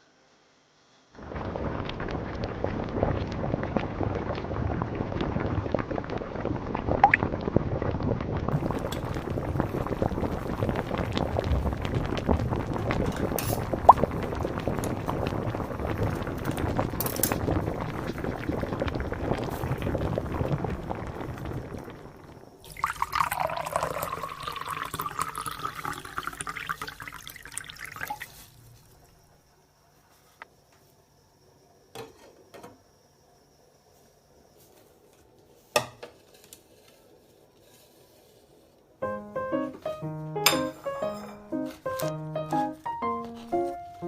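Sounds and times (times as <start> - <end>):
water running and pouring: 1.3 - 29.1.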